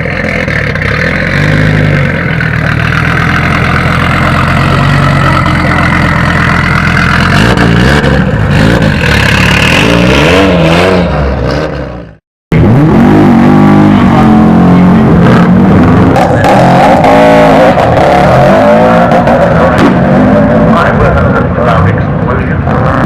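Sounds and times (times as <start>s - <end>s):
rally car engine revving: 0.0s - 23.0s.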